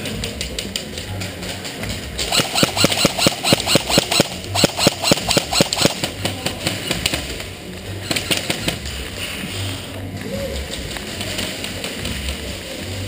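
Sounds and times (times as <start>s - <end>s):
airsoft gun shots: 2.2s - 6.5s.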